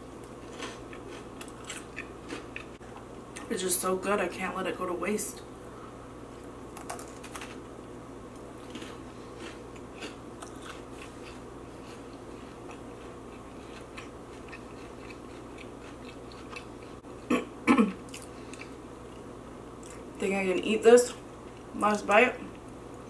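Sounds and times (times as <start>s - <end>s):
chewing and biting food: 0.2s - 2.8s, 8.6s - 17.0s.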